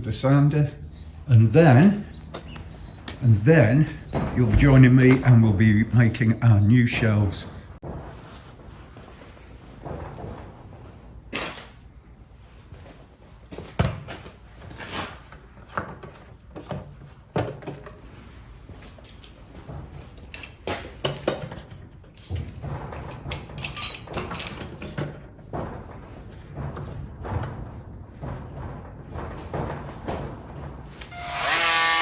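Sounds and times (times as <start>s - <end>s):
objects knocking and rattling: 13.5s - 31.2s.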